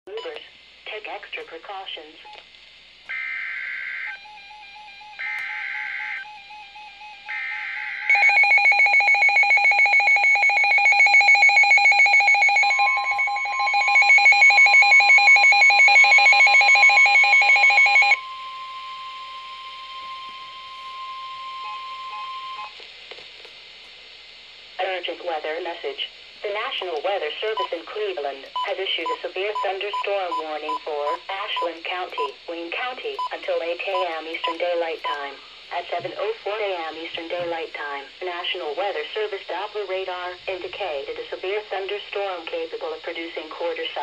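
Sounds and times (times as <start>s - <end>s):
buzzy data bursts: 3.0s - 8.2s
steady warning tone: 3.1s - 22.8s
pulsing alert attention signal: 4.1s - 9.1s.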